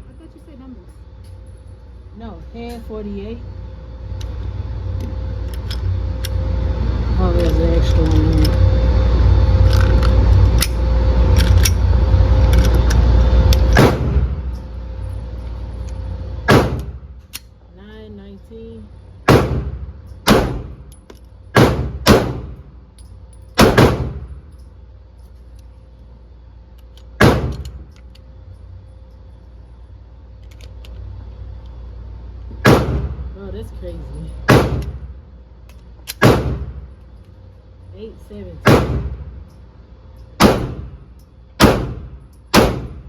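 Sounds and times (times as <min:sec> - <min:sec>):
pistol shots: 0:16.5 - 0:16.9, 0:19.3 - 0:20.8, 0:21.6 - 0:22.6, 0:23.6 - 0:24.2, 0:27.2 - 0:27.7, 0:32.6 - 0:33.2, 0:34.5 - 0:35.0, 0:36.2 - 0:36.8, 0:38.6 - 0:39.2, 0:40.4 - 0:41.0, 0:41.6 - 0:43.0.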